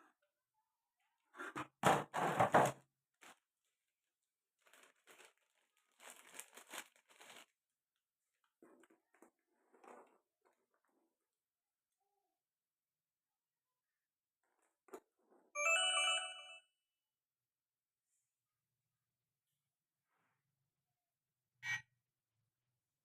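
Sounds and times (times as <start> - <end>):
packaging tearing and crinkling: 4.6 - 7.6.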